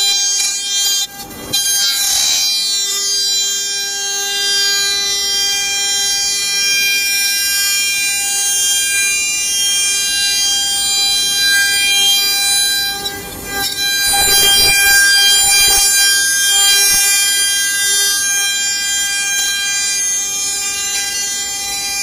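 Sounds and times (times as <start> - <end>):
router spindle whining: 9.9 - 21.6.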